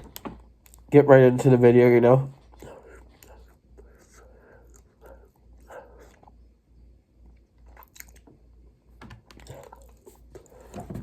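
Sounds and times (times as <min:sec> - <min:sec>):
chewing chocolate bar: 0:02.5 - 0:08.6, 0:09.2 - 0:10.6.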